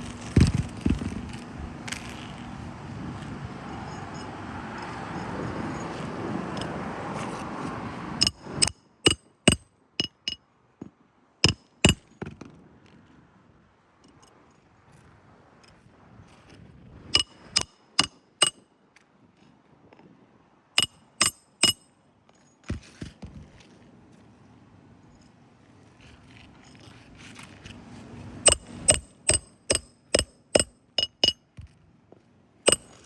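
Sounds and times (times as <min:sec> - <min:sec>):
hammer driving nails: 0:17.2 - 0:18.6, 0:28.5 - 0:31.7, 0:32.7 - 0:33.0.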